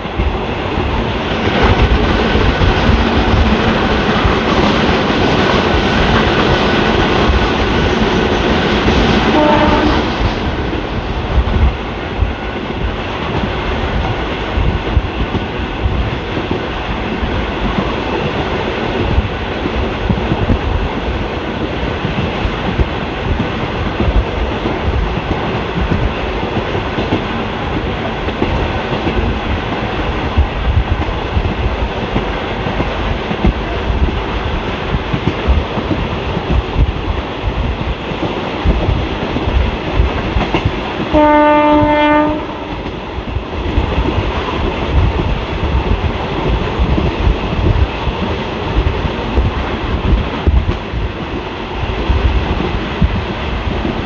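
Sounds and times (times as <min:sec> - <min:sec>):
train horn blast: 0:09.3 - 0:10.2, 0:41.1 - 0:42.8
train wheels clacking over rail joints: 0:11.5 - 0:54.0.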